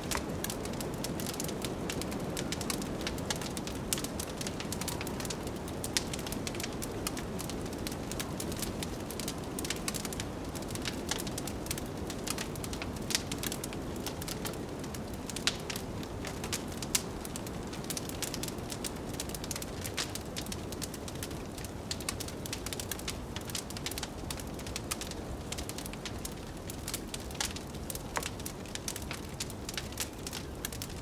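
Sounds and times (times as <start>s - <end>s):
fire popping: 0.0s - 31.0s
wood fire crackling: 0.0s - 31.0s.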